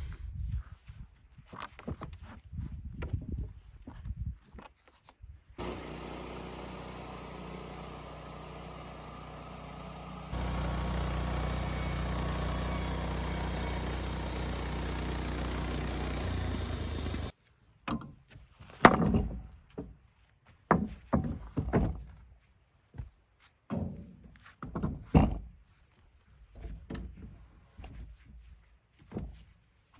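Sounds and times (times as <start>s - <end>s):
band sawmill cutting wood: 5.6s - 17.3s
wooden knocks and thuds: 17.9s - 20.0s, 20.7s - 22.2s, 23.7s - 25.5s.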